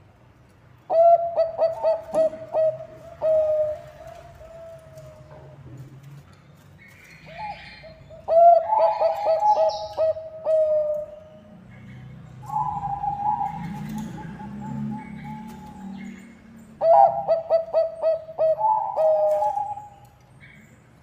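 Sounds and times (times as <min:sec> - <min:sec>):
dove cooing: 0:00.9 - 0:05.6, 0:07.3 - 0:11.3, 0:12.4 - 0:16.0, 0:16.8 - 0:19.9.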